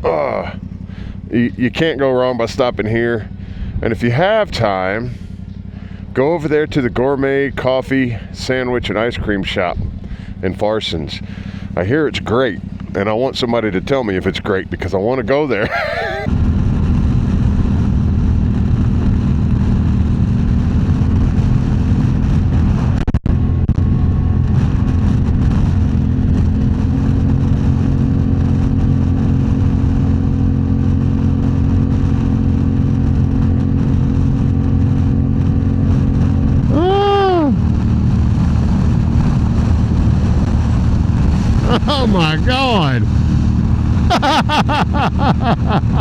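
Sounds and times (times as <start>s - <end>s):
motorcycle engine cruising: 0.0s - 2.6s, 4.6s - 46.0s
wind noise: 31.6s - 42.4s.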